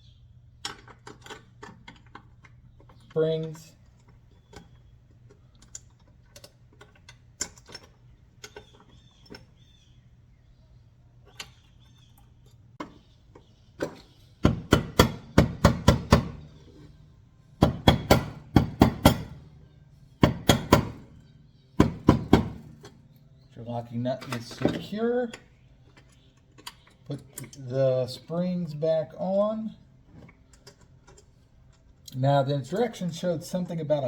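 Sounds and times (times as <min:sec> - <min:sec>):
rapid loud metallic clicks: 0:14.4 - 0:16.8, 0:17.6 - 0:21.2, 0:21.8 - 0:23.5.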